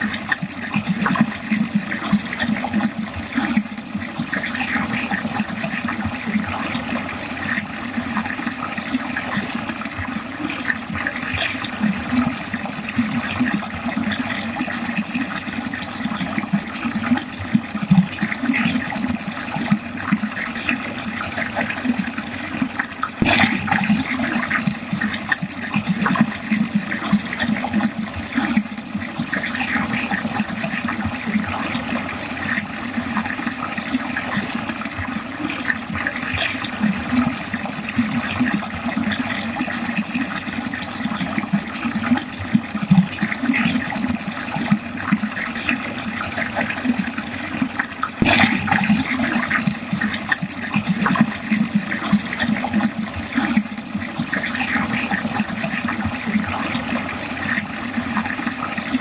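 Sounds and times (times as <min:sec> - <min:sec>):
water gurgling down a drain: 0:00.0 - 0:59.0
sharp water splash: 0:23.2 - 0:25.4, 0:48.0 - 0:51.3.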